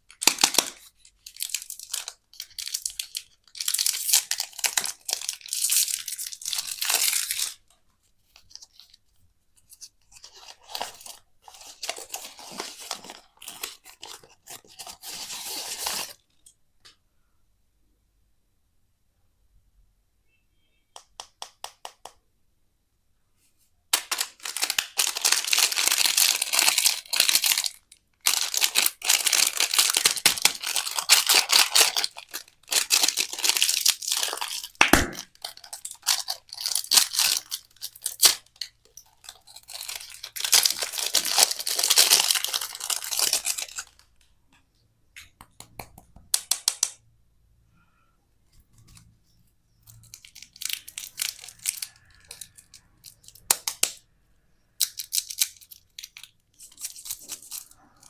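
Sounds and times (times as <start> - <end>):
candy wrapper crinkling: 0.0 - 7.7, 8.3 - 16.3, 23.9 - 44.2, 49.9 - 54.0, 54.6 - 58.0.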